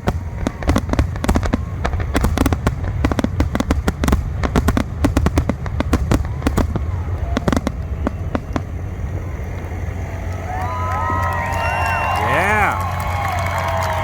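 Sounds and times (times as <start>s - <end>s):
fireworks cracking and banging: 0.0s - 14.0s
low rumble: 0.0s - 14.0s
people cheering and whistling: 6.1s - 14.0s.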